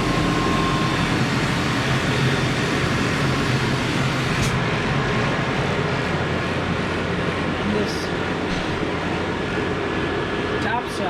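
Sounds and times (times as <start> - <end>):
blowers rushing: 0.0 - 4.4
low machine hum: 0.0 - 11.0.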